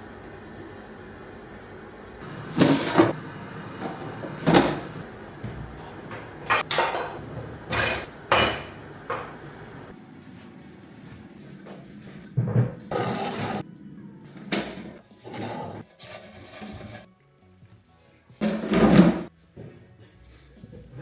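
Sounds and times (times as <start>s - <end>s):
dishes clinking and knocking: 2.4s - 3.2s, 3.8s - 9.8s, 12.3s - 13.6s, 18.4s - 19.3s.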